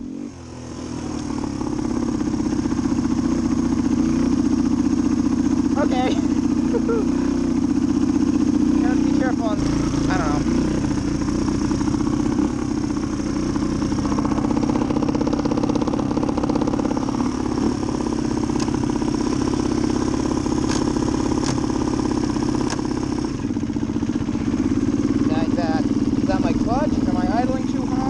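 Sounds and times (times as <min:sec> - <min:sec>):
motorcycle engine idling: 0:00.0 - 0:28.0
sharp clicks: 0:18.5 - 0:18.8, 0:20.6 - 0:21.7, 0:22.6 - 0:22.9.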